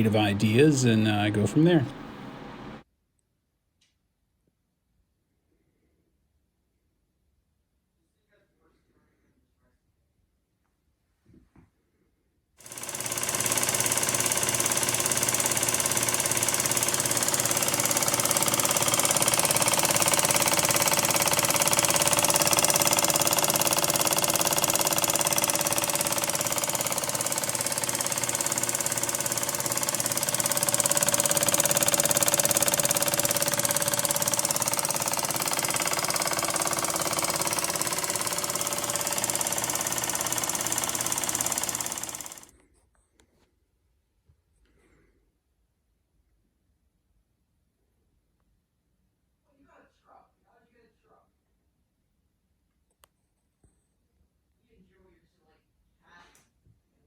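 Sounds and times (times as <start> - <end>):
scroll saw running: 0.0 - 2.8, 12.6 - 42.5.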